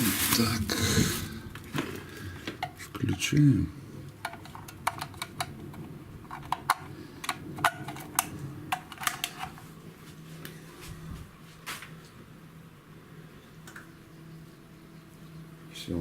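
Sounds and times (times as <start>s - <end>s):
refrigerator humming: 0.0s - 16.0s
sharp clicks and light taps: 13.6s - 13.9s.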